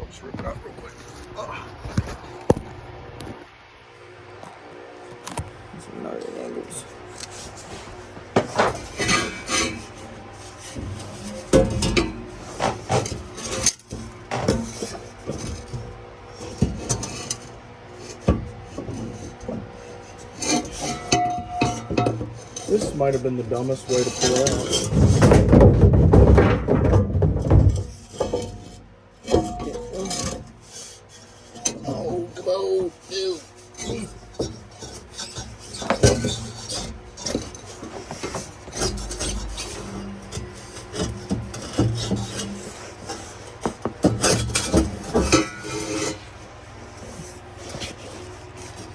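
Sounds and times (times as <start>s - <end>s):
metal scraping: 6.0s - 48.9s
metal clanks and knocks: 7.7s - 46.4s.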